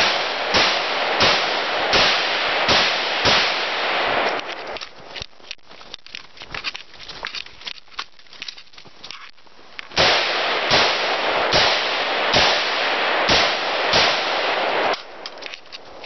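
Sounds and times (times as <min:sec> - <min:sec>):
rifle shots: 0:00.0 - 0:04.8, 0:10.0 - 0:15.3.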